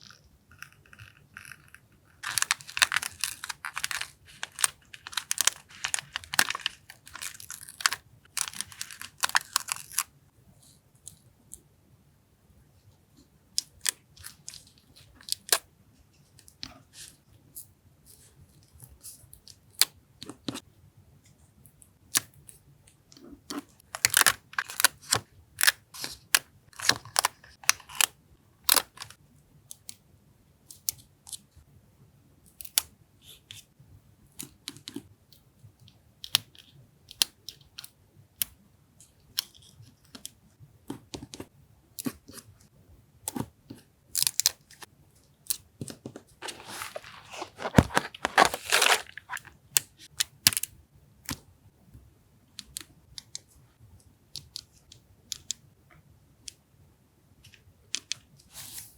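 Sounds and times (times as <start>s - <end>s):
paper rustling: 2.2s - 8.0s, 46.1s - 49.6s
paper tearing: 46.4s - 49.5s
scissors snipping paper: 46.4s - 49.5s.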